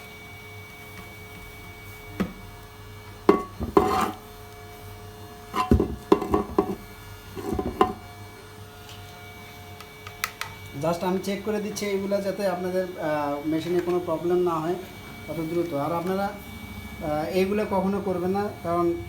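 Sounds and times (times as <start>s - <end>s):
rough noisy electric bursts: 10.7s - 19.0s.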